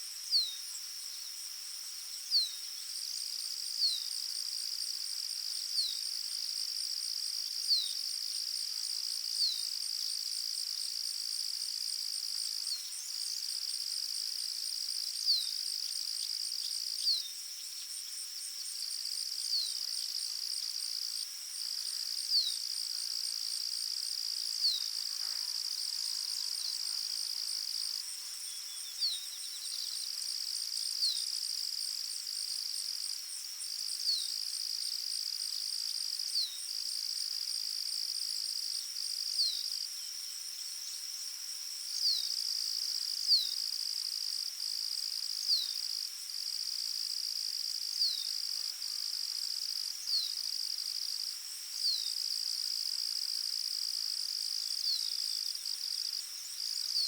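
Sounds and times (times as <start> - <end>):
high-pitched cricket trill: 0.0 - 57.0.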